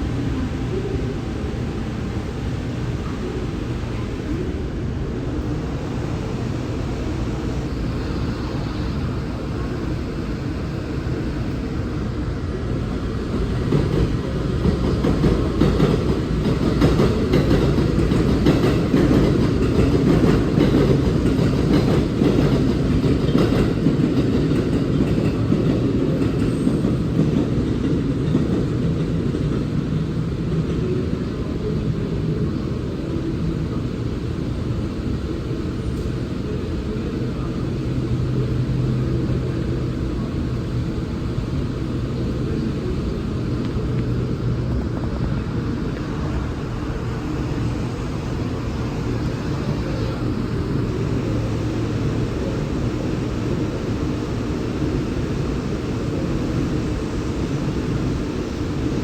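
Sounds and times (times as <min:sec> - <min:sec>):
train rumbling: 0:00.0 - 0:59.0.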